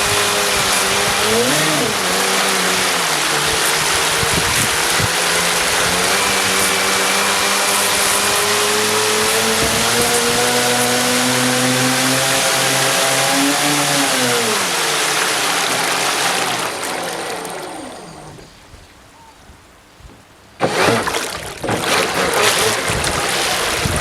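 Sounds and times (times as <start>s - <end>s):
electric motor whine: 0.0s - 18.5s
rushing water: 0.0s - 19.6s, 20.3s - 24.0s.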